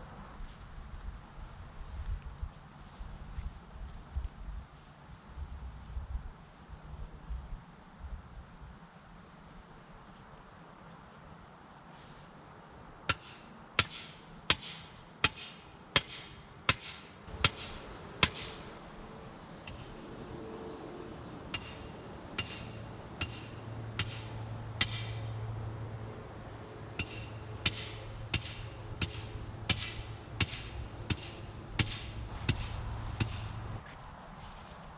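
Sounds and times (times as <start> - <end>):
hammer blows with metallic ring: 21.5 - 25.4, 27.0 - 33.8.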